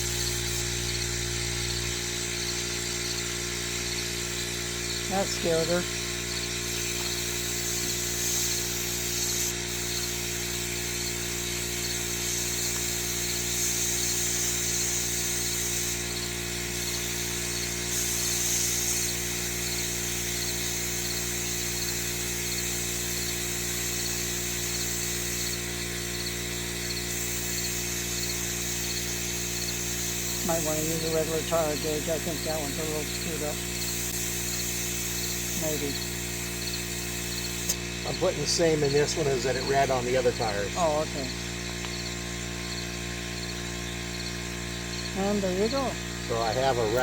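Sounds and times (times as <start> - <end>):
air hissing: 0.0 - 0.8, 5.1 - 41.6
tire inflator buzzing: 0.0 - 47.0.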